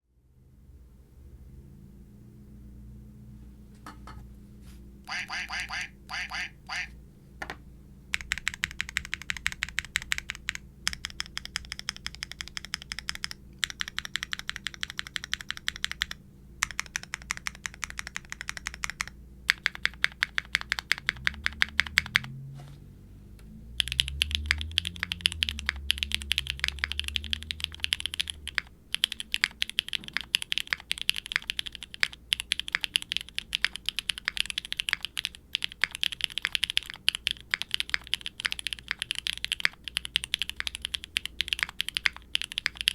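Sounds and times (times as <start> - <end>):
mechanical keyboard typing: 8.1 - 22.3, 23.8 - 42.9.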